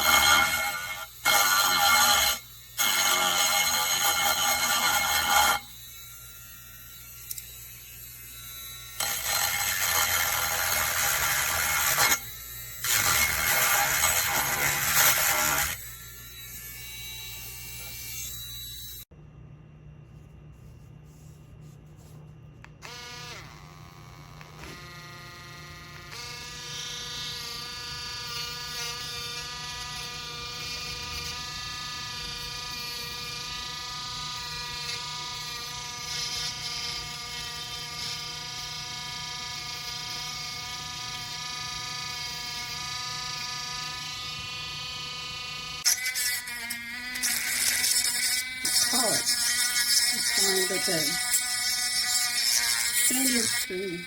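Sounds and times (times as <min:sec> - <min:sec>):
rotary tool motor whining: 0:00.0 - 0:19.1, 0:22.8 - 0:54.0.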